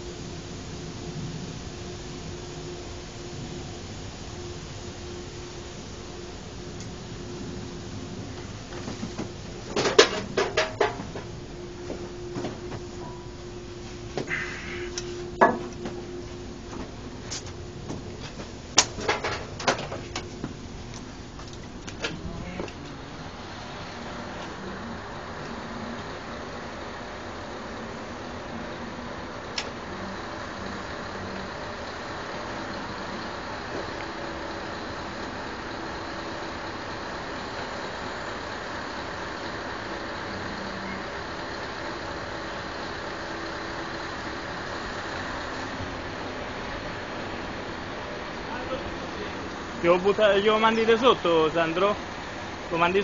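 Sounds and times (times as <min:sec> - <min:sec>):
crane engine and hydraulics running: 0:00.0 - 0:53.0
faint steady hum: 0:00.0 - 0:53.0
sharp knocks and clatters: 0:08.8 - 0:11.3, 0:16.8 - 0:20.6.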